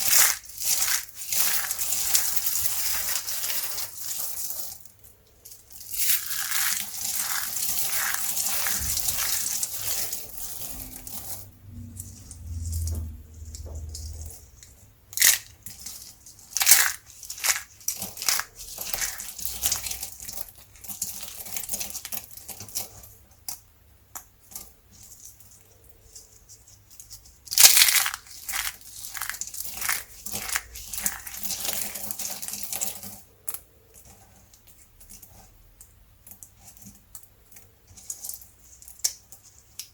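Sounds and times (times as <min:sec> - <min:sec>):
soap cracking and crunching: 0:00.0 - 0:04.8, 0:15.1 - 0:24.7, 0:27.5 - 0:35.3
dry soap crackling: 0:00.0 - 0:39.9.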